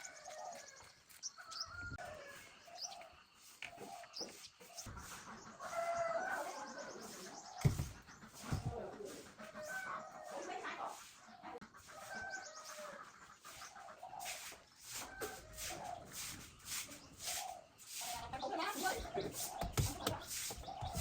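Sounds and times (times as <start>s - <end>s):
birds chirping: 0.0s - 21.0s.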